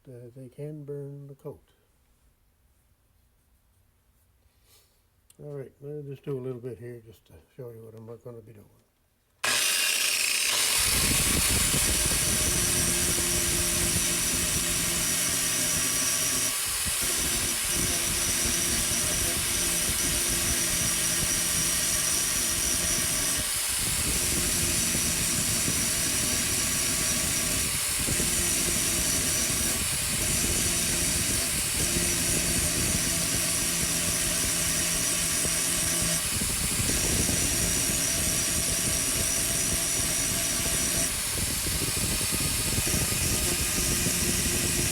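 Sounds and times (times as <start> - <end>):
electric grinder whining on steel: 9.4 - 44.9.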